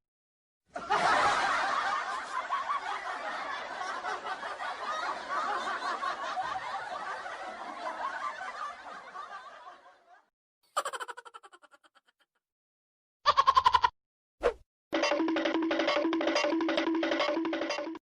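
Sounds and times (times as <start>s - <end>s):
crowd laughing: 0.7s - 12.3s.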